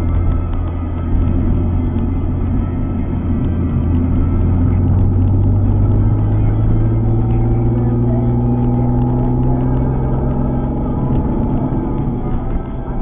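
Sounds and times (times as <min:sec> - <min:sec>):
car engine droning: 0:00.0 - 0:13.0.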